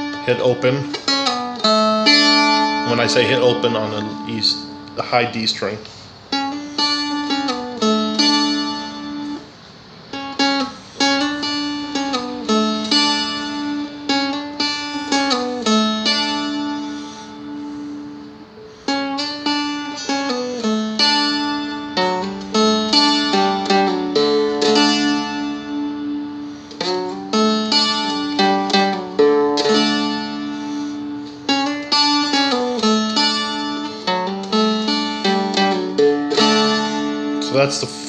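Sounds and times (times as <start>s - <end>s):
plucked dulcimer melody: 0.0s - 5.0s, 18.9s - 38.0s.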